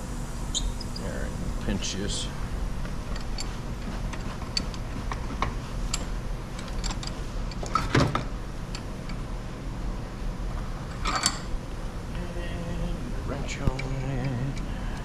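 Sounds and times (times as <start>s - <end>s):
low shop hum: 0.0s - 15.0s.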